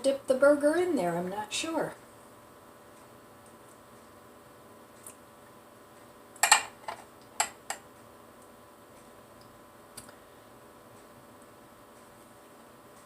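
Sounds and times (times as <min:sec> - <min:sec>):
tableware clicking and knocking: 0:06.4 - 0:07.8.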